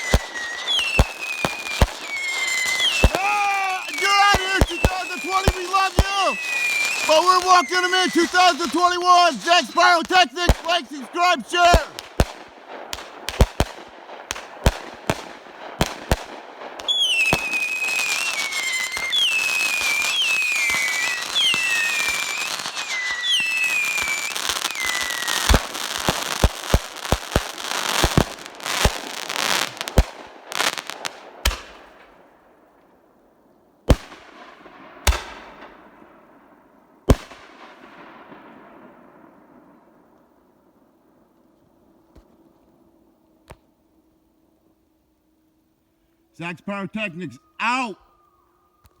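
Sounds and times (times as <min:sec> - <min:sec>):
fireworks whistles: 0:00.0 - 0:12.0, 0:16.8 - 0:32.0
fireworks reports: 0:00.0 - 0:12.4, 0:16.9 - 0:30.1, 0:46.3 - 0:48.1
fireworks crackle: 0:00.0 - 0:32.3, 0:37.0 - 0:42.8.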